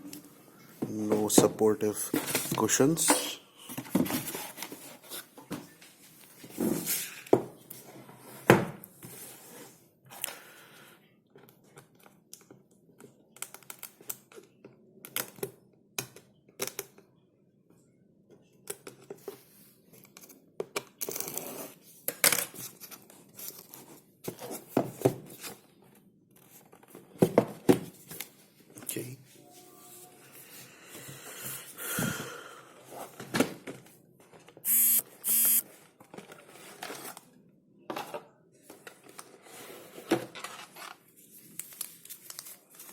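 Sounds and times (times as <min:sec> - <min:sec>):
packaging rustling and tearing: 0:41.4 - 0:42.9.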